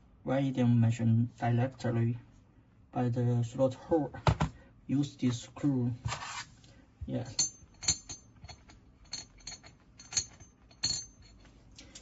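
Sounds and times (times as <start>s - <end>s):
small metal parts clinking: 7.3s - 12.0s.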